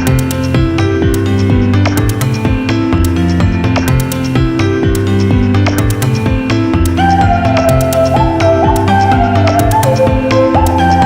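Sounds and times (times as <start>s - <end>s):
electronic music with steady beat: 0.0s - 11.0s
held bass notes: 0.0s - 11.0s
sliding lead melody: 0.0s - 11.0s.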